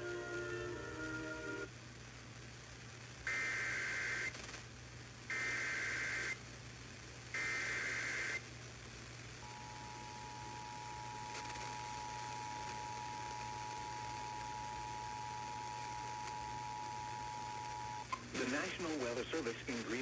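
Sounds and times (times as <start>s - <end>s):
buzzy digital data tones: 3.3s - 4.4s, 5.3s - 6.4s, 7.4s - 8.4s, 9.4s - 20.0s.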